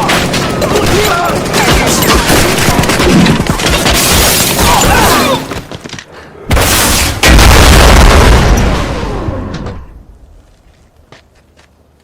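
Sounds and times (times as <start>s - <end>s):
rapid gunfire: 0.0s - 4.3s
explosions: 6.5s - 10.0s.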